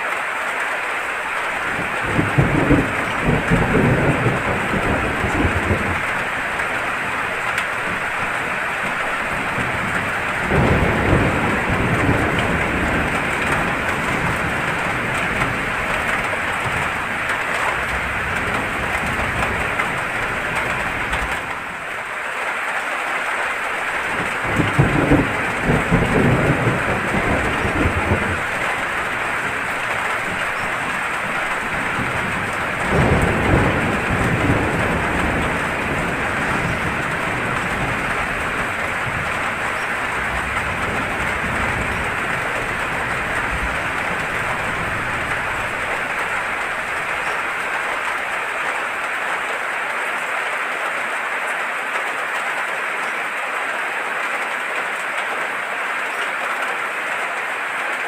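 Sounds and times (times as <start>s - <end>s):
steady rain: 0.0s - 58.0s
thunder rumbling: 1.2s - 22.1s, 23.5s - 48.4s.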